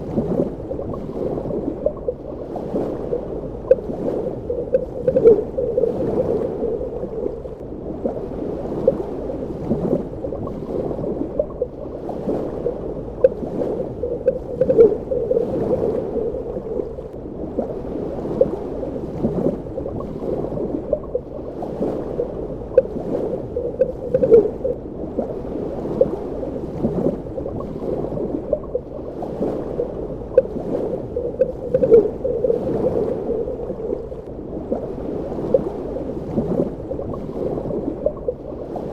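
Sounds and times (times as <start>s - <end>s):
muffled underwater water movement: 0.0s - 38.9s
bubbling pops and clicks: 3.7s - 3.9s, 4.6s - 7.2s, 13.2s - 16.6s, 23.6s - 24.7s, 31.2s - 33.9s.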